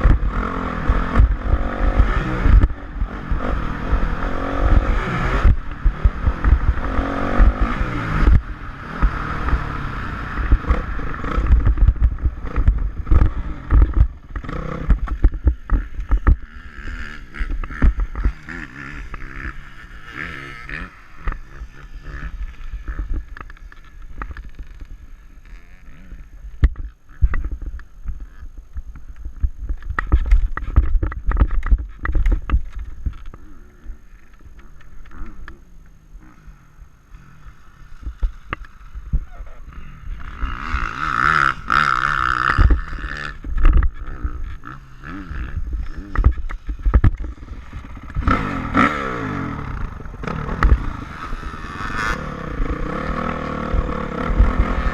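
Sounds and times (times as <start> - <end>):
motocross bike engine: 0.0 - 54.9.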